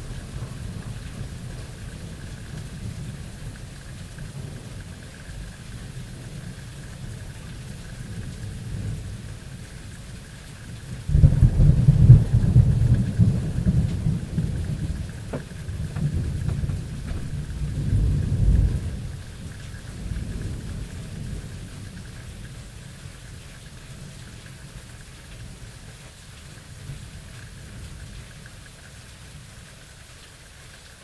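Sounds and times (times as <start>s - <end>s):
thunder rumbling: 0.0s - 10.1s, 10.8s - 22.9s
steady rain: 0.0s - 31.0s.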